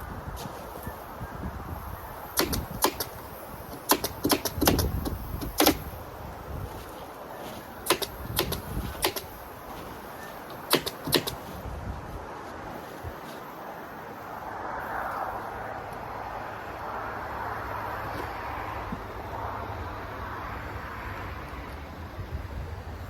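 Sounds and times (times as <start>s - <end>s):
stapler gun snaps: 2.4s - 5.9s, 7.9s - 9.3s, 10.7s - 11.4s.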